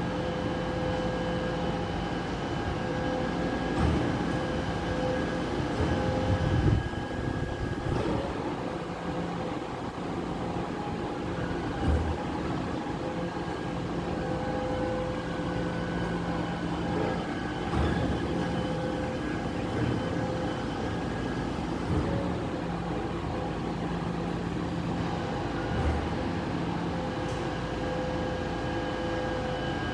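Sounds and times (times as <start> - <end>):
garbage truck machine hum: 0.0 - 29.9.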